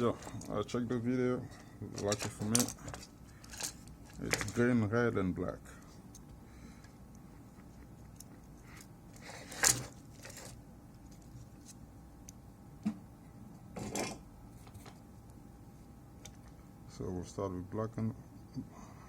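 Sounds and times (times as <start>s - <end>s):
faint steady background noise: 0.0s - 19.0s
tools scraping and clicking: 8.0s - 11.8s.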